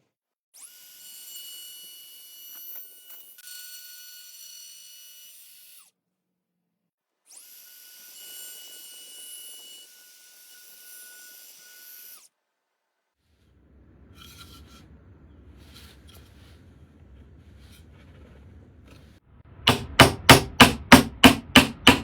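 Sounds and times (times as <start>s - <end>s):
wood router motor whining: 0.6s - 5.8s, 7.3s - 12.2s.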